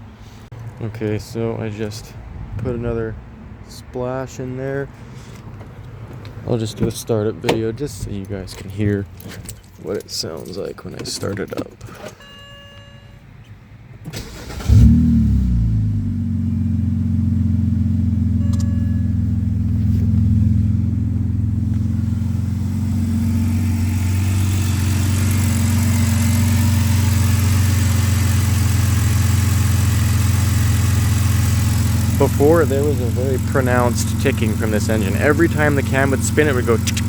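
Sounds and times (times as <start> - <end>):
car engine starting and idling: 13.5 - 37.0
short electronic chime: 18.4 - 19.2.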